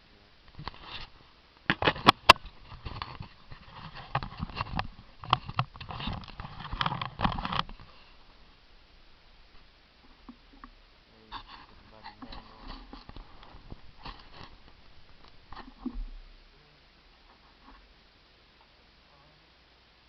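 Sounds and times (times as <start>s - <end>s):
rubbing and knocking on camera: 0.6s - 8.0s, 11.3s - 16.2s.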